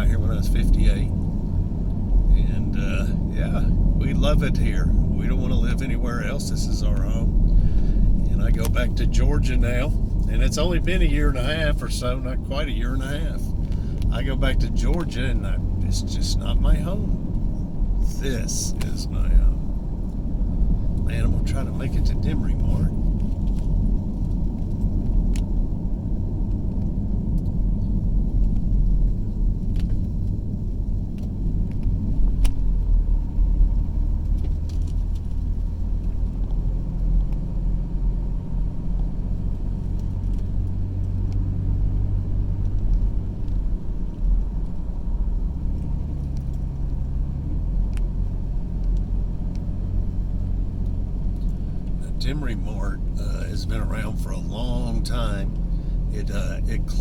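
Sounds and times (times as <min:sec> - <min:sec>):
car engine and road noise: 0:00.0 - 0:57.0
light clicks and rattles: 0:26.4 - 0:53.5.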